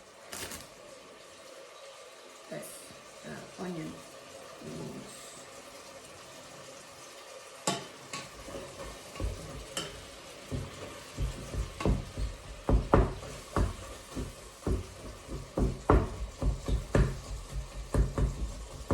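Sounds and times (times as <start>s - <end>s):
onion and garlic sizzling in butter: 0.0s - 18.9s
utensil knocking and scraping pan: 7.7s - 18.9s.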